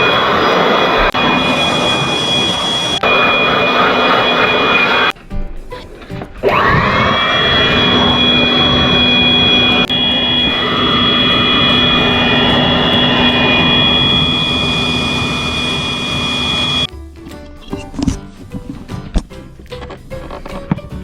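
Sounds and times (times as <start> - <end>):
pressure washer motor whine: 0.0 - 5.2, 6.4 - 16.9.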